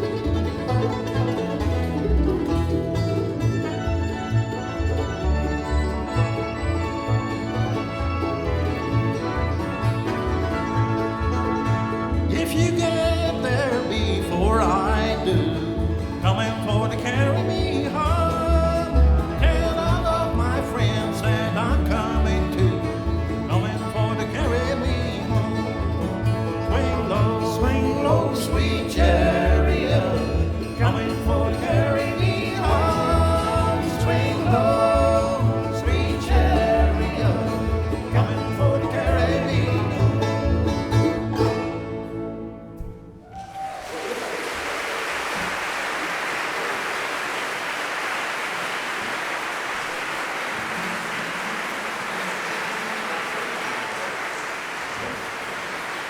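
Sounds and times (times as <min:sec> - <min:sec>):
bluegrass band playing: 0:00.0 - 0:43.2
picked string instruments: 0:00.0 - 0:43.7.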